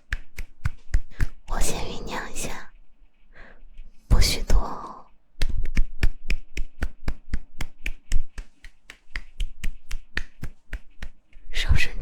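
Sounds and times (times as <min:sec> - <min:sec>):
hand claps: 0:00.0 - 0:01.5, 0:05.4 - 0:11.5.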